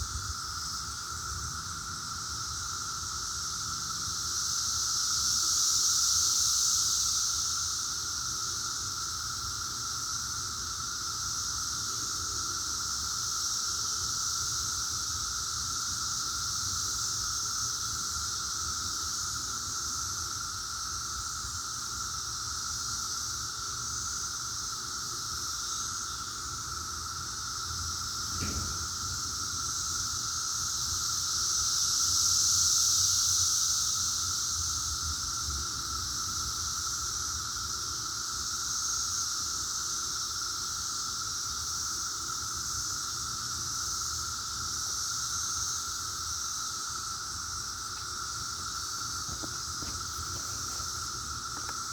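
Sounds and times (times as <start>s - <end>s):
cicadas droning: 0.0s - 51.9s
brief knock: 28.3s - 29.1s, 49.3s - 51.0s.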